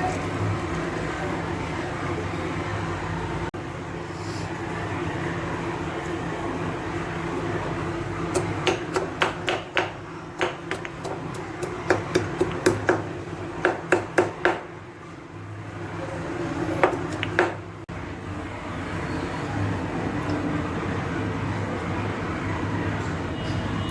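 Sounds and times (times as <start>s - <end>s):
sharp kitchen knocks: 8.3s - 14.7s, 16.8s - 17.6s.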